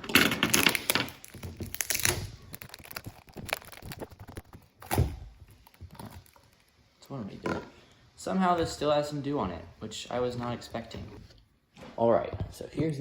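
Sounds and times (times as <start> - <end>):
packaging rustling: 0.2 - 6.8.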